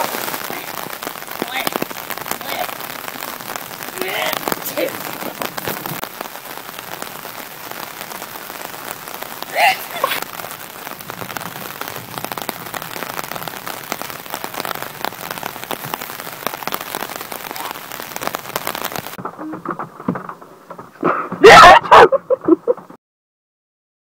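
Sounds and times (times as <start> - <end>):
rain pattering: 0.0 - 23.0
loud vocal cry: 9.5 - 10.2, 21.4 - 22.1.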